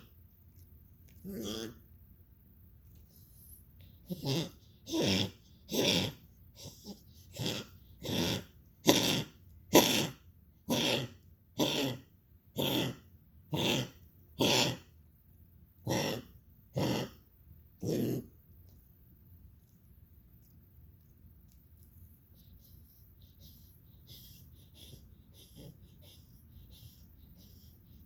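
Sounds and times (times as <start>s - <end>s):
animal coughing: 4.0s - 14.9s, 15.8s - 17.2s.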